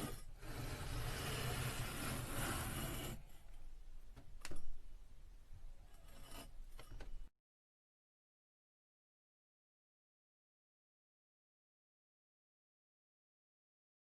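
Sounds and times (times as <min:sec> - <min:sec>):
scraping rubbing noise: 0:00.0 - 0:03.3.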